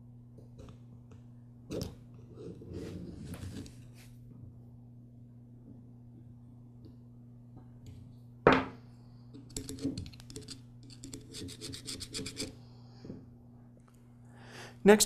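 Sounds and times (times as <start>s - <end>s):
tool scratching and rubbing: 9.6s - 12.6s.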